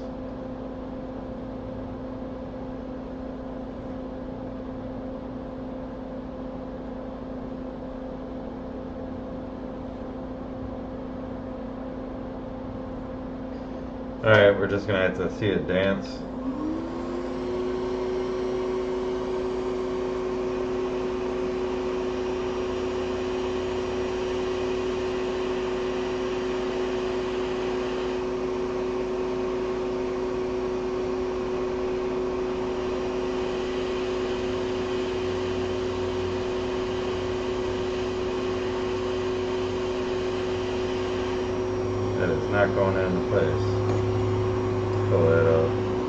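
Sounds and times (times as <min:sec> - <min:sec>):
hot air station whining hiss: 0:13.5 - 0:46.0.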